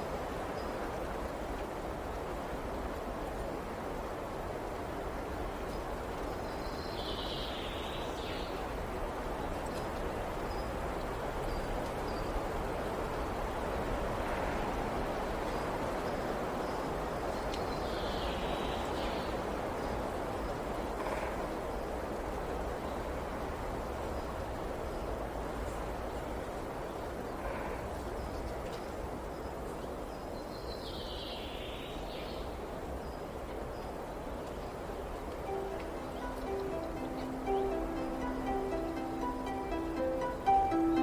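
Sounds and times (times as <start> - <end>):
faint high chirps: 35.5 - 41.0.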